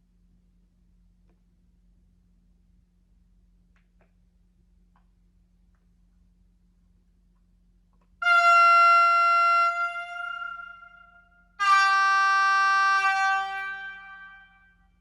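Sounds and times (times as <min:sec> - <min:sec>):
locomotive horn blasts: 0:08.2 - 0:14.8.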